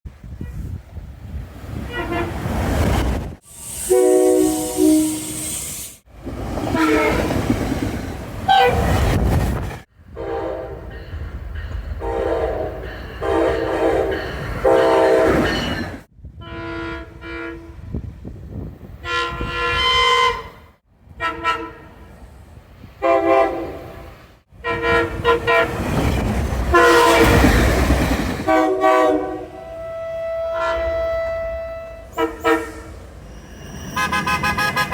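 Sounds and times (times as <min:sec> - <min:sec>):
trains rumbling past: 0:00.1 - 0:34.9
train horn blasts: 0:01.9 - 0:02.5, 0:03.6 - 0:05.8, 0:06.7 - 0:07.4, 0:10.1 - 0:10.9, 0:12.0 - 0:15.7, 0:16.3 - 0:18.0, 0:19.0 - 0:22.1, 0:23.0 - 0:25.9, 0:26.7 - 0:27.5, 0:28.4 - 0:33.0, 0:33.8 - 0:34.9.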